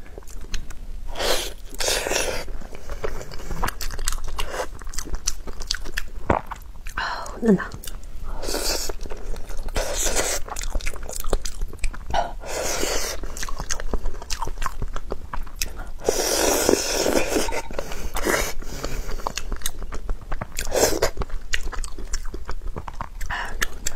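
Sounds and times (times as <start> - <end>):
chewing soft food: 0.0 - 23.9
slurps: 16.0 - 19.2.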